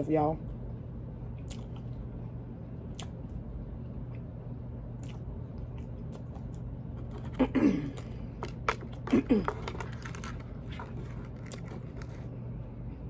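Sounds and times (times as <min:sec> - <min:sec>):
steady low hum: 0:00.0 - 0:13.0
person chewing: 0:01.4 - 0:02.1, 0:02.9 - 0:03.4, 0:05.0 - 0:12.3.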